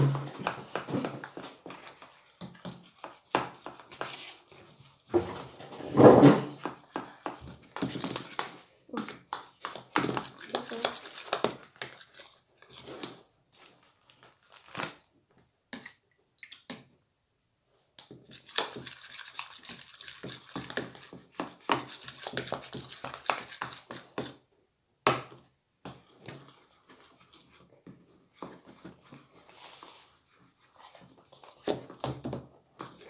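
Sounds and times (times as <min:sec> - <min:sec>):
wet squishing and scraping: 0:07.1 - 0:15.0, 0:18.2 - 0:24.4.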